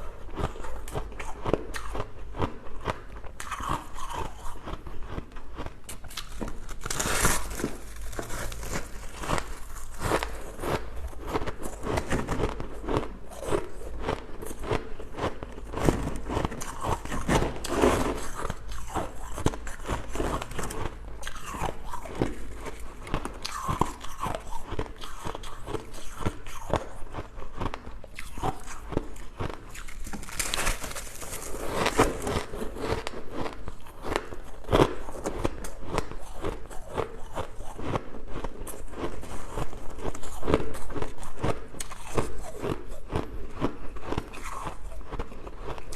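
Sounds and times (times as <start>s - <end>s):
irregular crunching and crackles: 0.3s - 45.9s.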